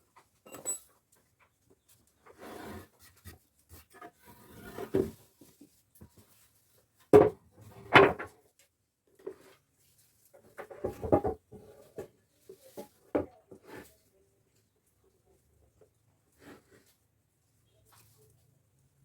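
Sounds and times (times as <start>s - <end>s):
timber scraping and shuffling: 2.2s - 6.9s.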